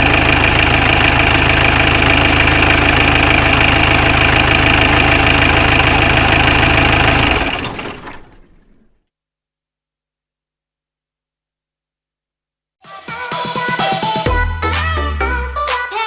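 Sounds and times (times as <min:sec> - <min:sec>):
bus engine running: 0:00.0 - 0:08.9.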